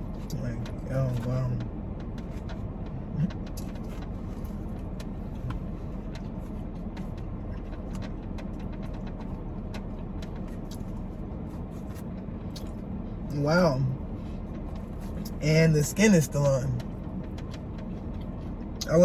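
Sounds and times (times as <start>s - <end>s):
vehicle humming: 0.0s - 19.0s
eating clicks and taps: 4.7s - 10.9s, 16.8s - 18.8s.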